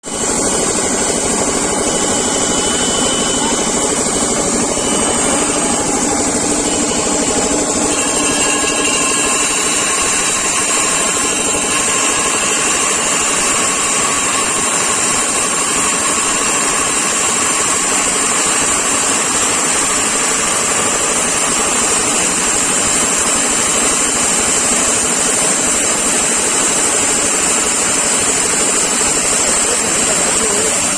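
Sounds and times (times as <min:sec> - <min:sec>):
core drill motor whine: 0:00.1 - 0:30.9
drill grinding concrete: 0:00.1 - 0:30.9.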